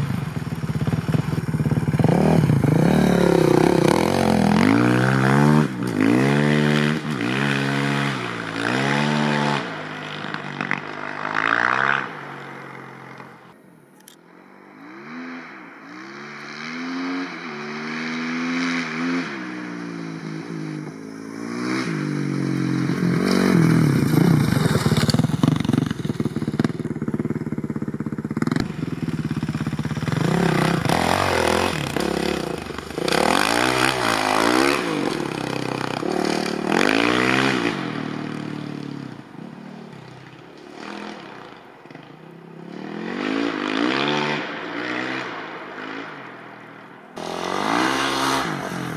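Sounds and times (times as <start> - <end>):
motorcycle engine revving: 0.0 - 13.6, 14.5 - 48.9.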